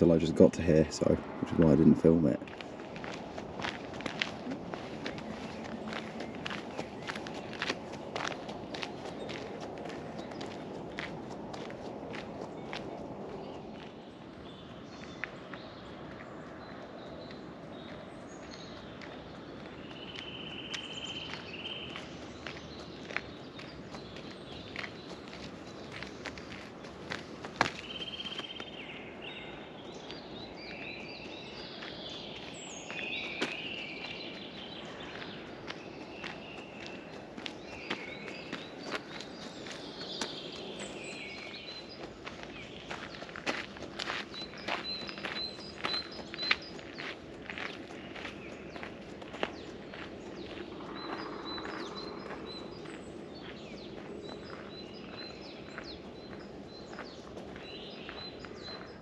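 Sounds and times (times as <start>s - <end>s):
low outdoor rustle: 0.0s - 59.0s
songbirds singing: 0.0s - 59.0s
footsteps on a path: 2.3s - 59.0s.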